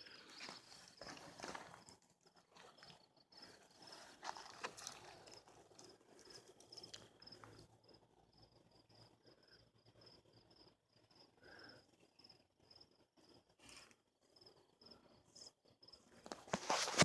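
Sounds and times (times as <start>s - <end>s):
soft rustles and crackles: 0.0s - 7.7s, 16.1s - 17.0s
cricket chirping: 0.0s - 17.0s.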